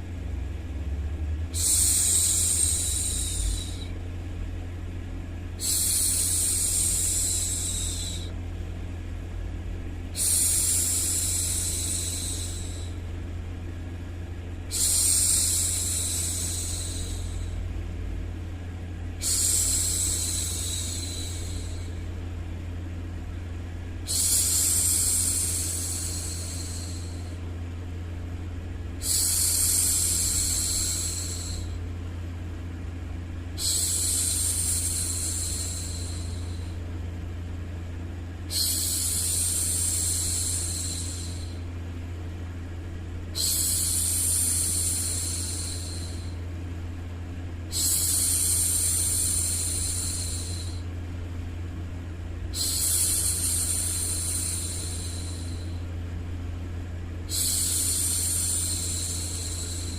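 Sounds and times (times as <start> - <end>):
low white-noise hum: 0.0 - 59.9
woman shushing: 1.6 - 3.9, 5.6 - 8.3, 10.2 - 13.0, 14.7 - 17.6, 43.4 - 46.3.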